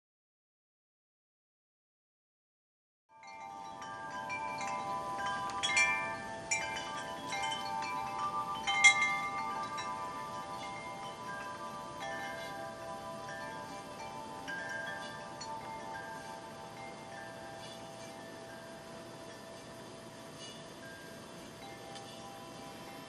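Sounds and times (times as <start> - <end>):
metal wind chimes ringing: 3.1 - 23.0.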